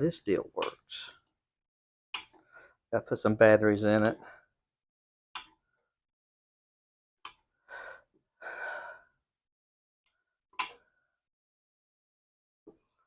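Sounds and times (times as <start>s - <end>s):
man breathing out heavily: 7.7s - 9.1s.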